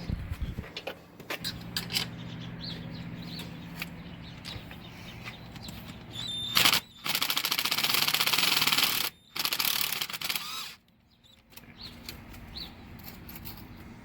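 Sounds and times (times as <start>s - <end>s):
power wrench rattling: 6.2s - 10.8s.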